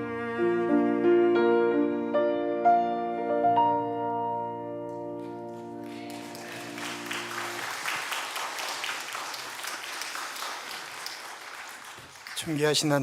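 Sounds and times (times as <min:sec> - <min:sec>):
piano and strings chord: 0:00.0 - 0:07.7
congregation applause: 0:05.2 - 0:13.0.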